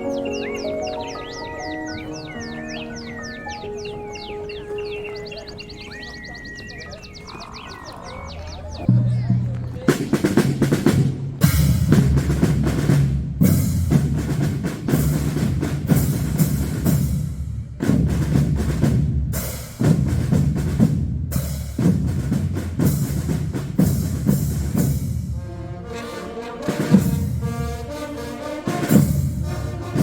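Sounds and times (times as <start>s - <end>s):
brass instruments: 0.0s - 7.0s, 9.8s - 30.0s
bass drum beats: 8.8s - 25.4s
snare drum rolls: 9.7s - 25.3s.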